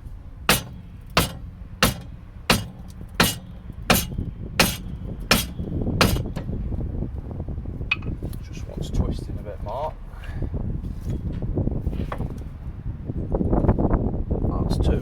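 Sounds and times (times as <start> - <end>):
sharp hammer taps on metal: 0.5 - 6.5.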